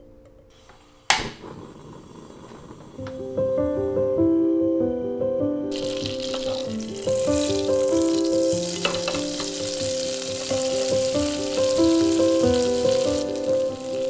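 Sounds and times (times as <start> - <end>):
food sizzling in a pan: 5.7 - 14.0.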